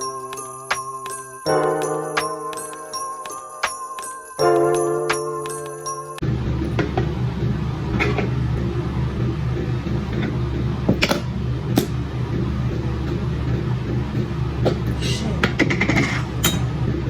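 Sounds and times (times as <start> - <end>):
microwave oven humming: 6.2 - 17.0.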